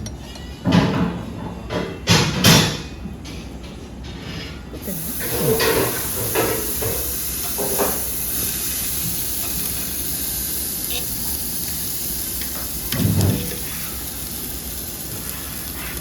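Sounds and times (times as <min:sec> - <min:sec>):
food sizzling on hot surface: 0:04.8 - 0:16.0.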